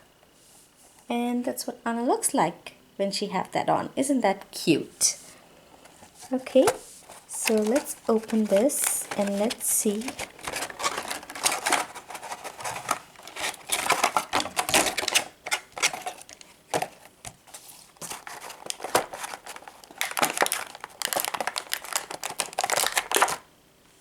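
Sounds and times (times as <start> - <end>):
packaging crinkling and rustling: 5.8 - 23.5.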